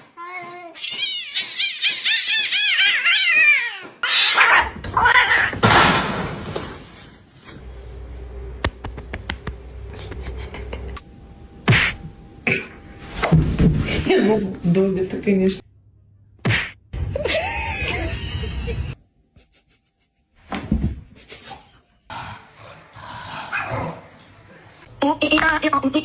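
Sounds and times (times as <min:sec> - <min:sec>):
cat crying: 0:00.8 - 0:05.6.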